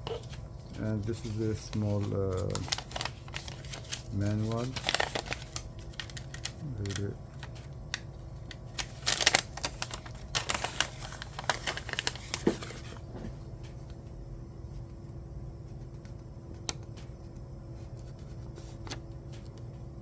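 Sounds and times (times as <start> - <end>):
paper and cardboard rustling: 0.0 - 7.7, 8.5 - 13.5
steady low hum: 0.0 - 20.0.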